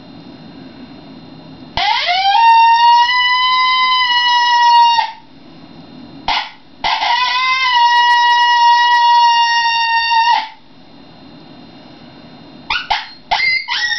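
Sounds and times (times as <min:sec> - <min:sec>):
coyote howler call: 0:01.8 - 0:05.3, 0:06.3 - 0:10.6, 0:12.7 - 0:13.9.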